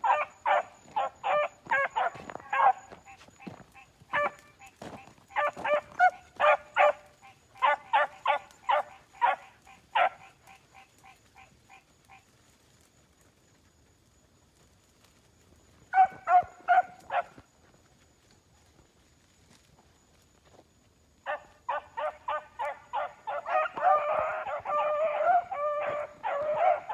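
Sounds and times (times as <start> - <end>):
puppies barking: 0.0 - 10.6, 15.9 - 17.3, 21.3 - 26.9.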